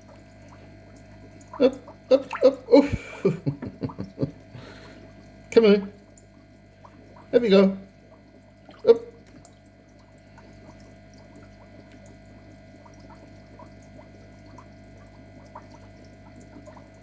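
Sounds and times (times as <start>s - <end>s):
aquarium water moving: 0.0s - 17.0s
low equipment hum: 0.0s - 17.0s
faint ticks and pops: 10.6s - 12.2s.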